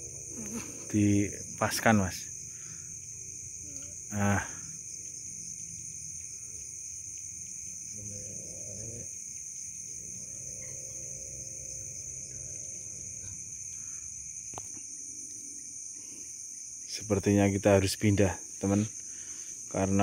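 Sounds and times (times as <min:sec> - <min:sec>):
crickets and insects chirping: 0:00.0 - 0:20.0.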